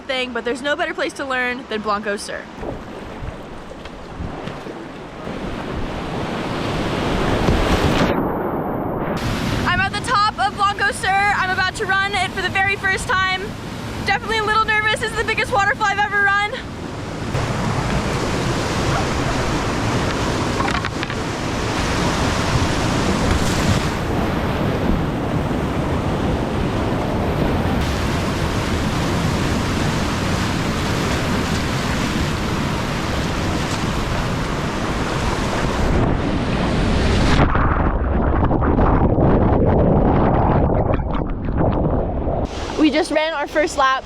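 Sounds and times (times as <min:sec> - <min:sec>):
rushing whitewater: 0:09.2 - 0:24.8, 0:27.0 - 0:37.2
waterfall roaring: 0:17.3 - 0:24.6, 0:27.7 - 0:35.9.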